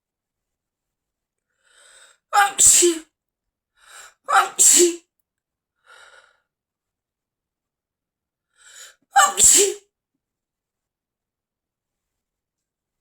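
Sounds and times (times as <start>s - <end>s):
person sneezing: 2.4s - 3.0s, 4.3s - 5.0s, 9.2s - 9.8s.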